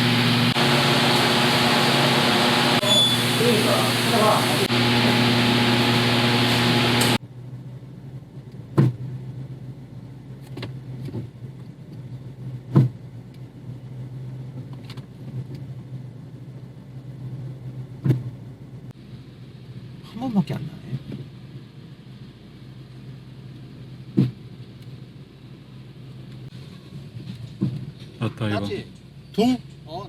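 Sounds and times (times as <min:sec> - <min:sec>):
loud rushing noise: 0:00.0 - 0:07.2
car running with low hum: 0:00.0 - 0:30.0.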